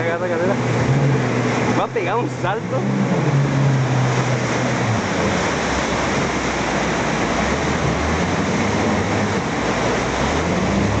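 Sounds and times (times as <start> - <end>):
motorboat engine running: 0.0 - 11.0
water rushing around hull: 0.0 - 11.0.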